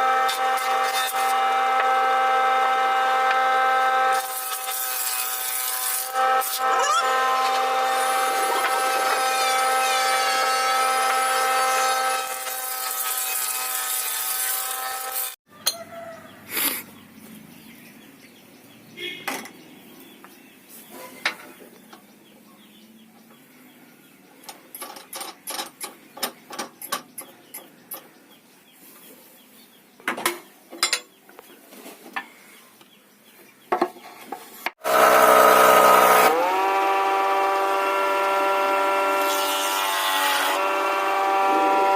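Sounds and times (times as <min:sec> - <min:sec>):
power tool whining: 0:00.0 - 0:15.4, 0:34.8 - 0:41.9.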